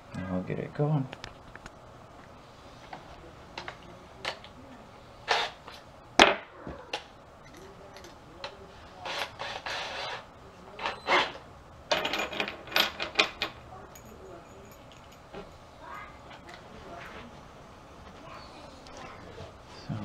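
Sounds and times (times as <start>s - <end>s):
tools and screws clattering: 7.4s - 15.6s.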